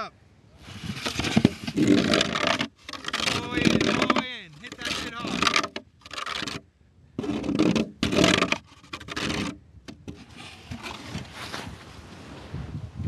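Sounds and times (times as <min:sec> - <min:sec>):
snow shovel scraping: 0:00.6 - 0:05.6, 0:10.2 - 0:11.9.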